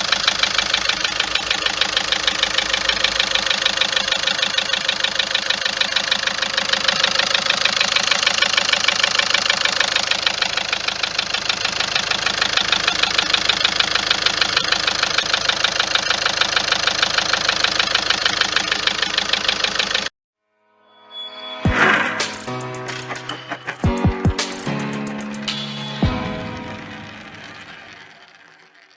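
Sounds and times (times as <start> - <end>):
car engine idling with ticking: 0.0 - 20.1.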